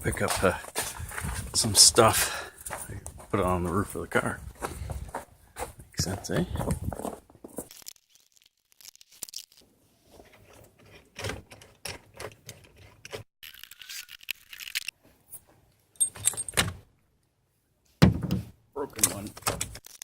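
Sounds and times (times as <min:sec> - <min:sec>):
hard parts clicking and scraping: 0:10.1 - 0:16.7
louder knocks: 0:18.0 - 0:18.5.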